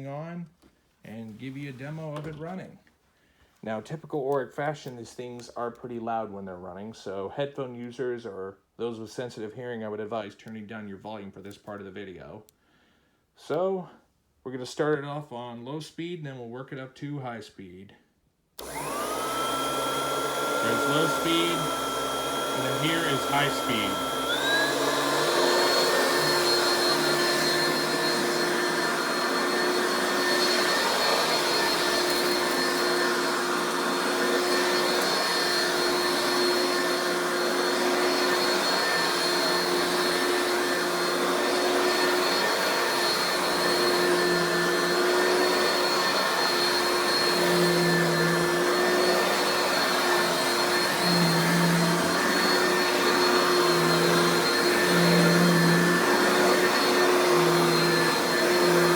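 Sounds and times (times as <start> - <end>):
vacuum cleaner motor whine: 18.6 - 58.9.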